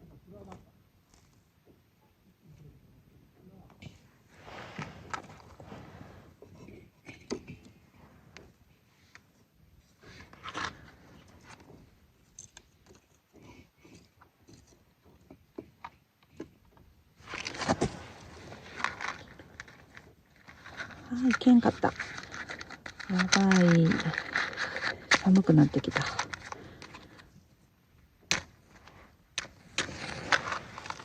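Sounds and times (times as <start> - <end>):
rustling and scraping: 3.8 - 31.0
camping gear being handled: 4.0 - 14.6, 17.2 - 27.6, 28.2 - 31.0.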